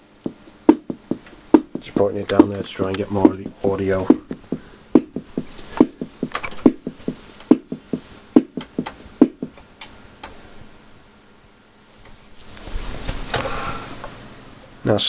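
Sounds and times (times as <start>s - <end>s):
drum machine rhythm: 0.0s - 9.6s.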